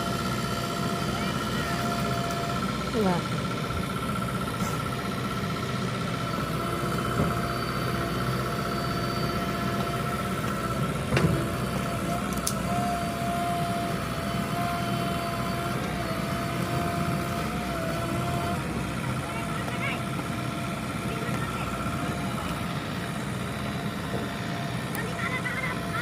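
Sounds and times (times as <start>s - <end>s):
heavy machinery engine running: 0.0s - 26.0s.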